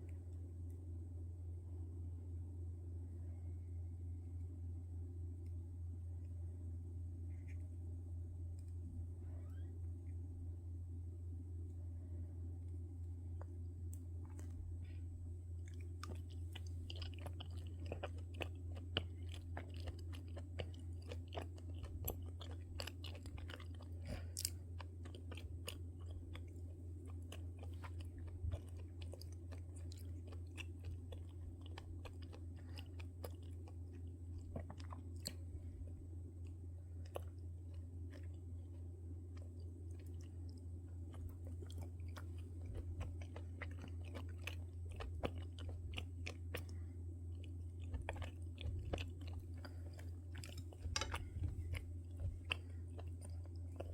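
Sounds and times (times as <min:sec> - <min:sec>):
steady low hum: 0:00.0 - 0:53.9
person chewing crunchy food: 0:13.3 - 0:53.9.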